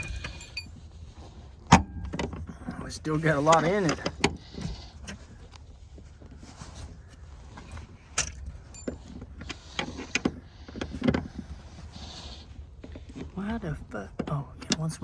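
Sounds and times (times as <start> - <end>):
metallic clicks and clanks: 0.0 - 0.7, 7.6 - 9.1
low steady hum: 0.0 - 3.6.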